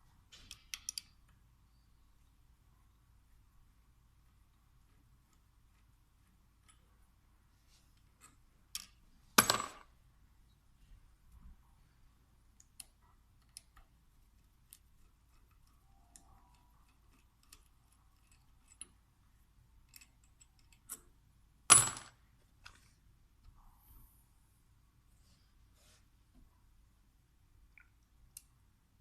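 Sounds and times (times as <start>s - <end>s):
small metal parts clicking: 0.3s - 1.2s, 14.6s - 19.0s, 19.8s - 21.1s.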